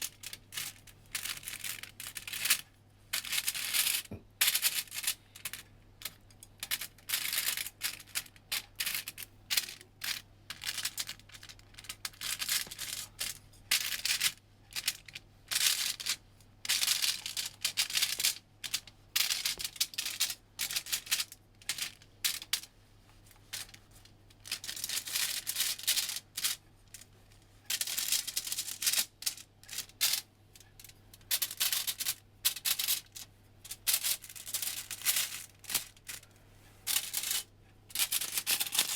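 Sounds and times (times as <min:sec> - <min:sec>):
rustles scrapes and clicks: 0:00.0 - 0:38.9.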